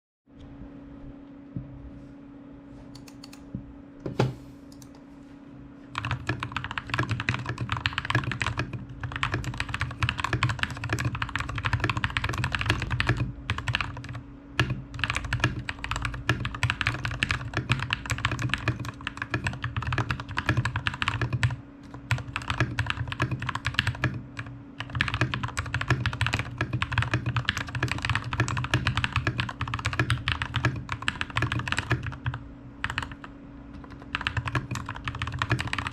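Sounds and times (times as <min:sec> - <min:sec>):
steady low hum: 0:00.3 - 0:35.9
mechanical keyboard typing: 0:03.0 - 0:03.4, 0:06.0 - 0:35.9.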